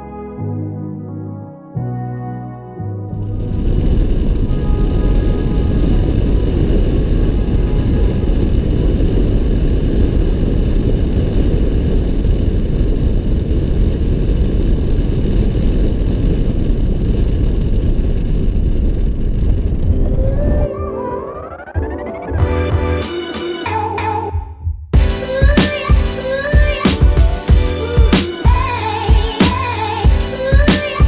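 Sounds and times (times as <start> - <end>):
synth music: 0.0 - 8.3, 19.9 - 24.4, 25.0 - 31.0.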